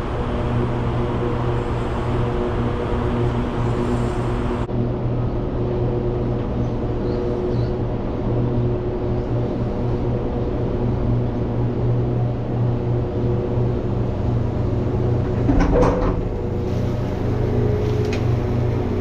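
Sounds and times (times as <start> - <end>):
clank and squeak: 15.3 - 16.8.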